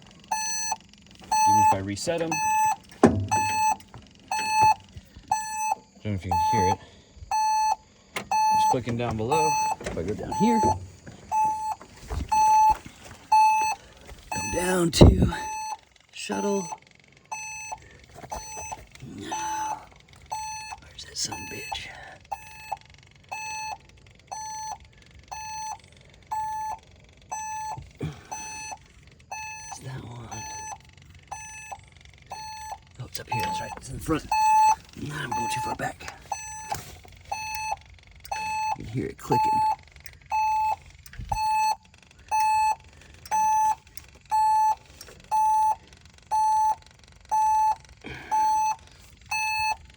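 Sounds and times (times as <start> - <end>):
warning beeper beeping: 0.3 - 49.8
short low thump: 3.0 - 3.6.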